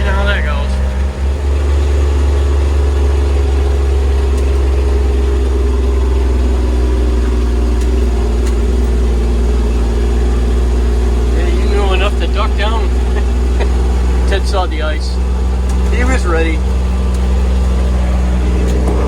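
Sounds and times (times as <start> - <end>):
diesel engine humming: 0.0 - 19.0.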